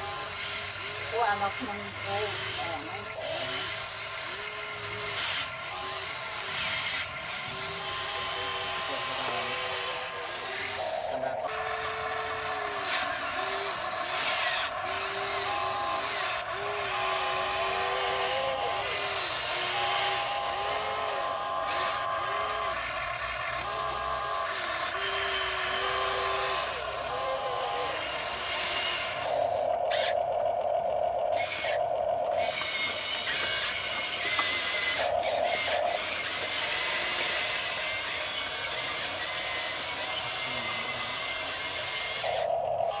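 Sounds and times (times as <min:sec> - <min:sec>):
electric motors whining: 0:00.0 - 0:43.0.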